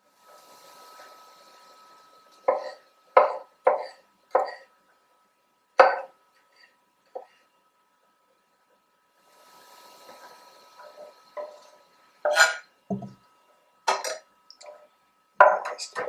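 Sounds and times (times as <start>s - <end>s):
knife chopping on cutting board: 2.5s - 4.6s, 5.8s - 6.1s.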